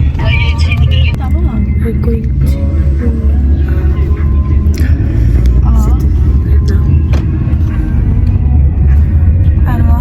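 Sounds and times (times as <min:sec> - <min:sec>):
background music: 0:00.0 - 0:10.0
low rumble of moving car: 0:00.0 - 0:10.0.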